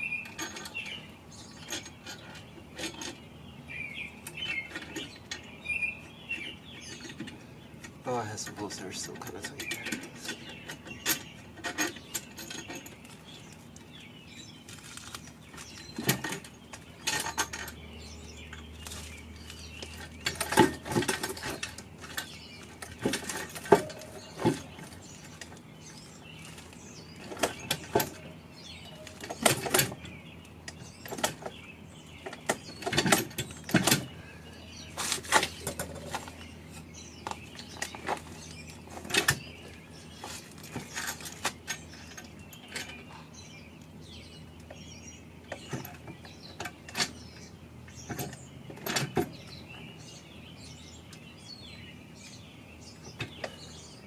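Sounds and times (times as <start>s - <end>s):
metal tools clinking: 0.2s - 3.2s, 8.3s - 13.6s, 14.8s - 30.1s, 40.1s - 43.2s.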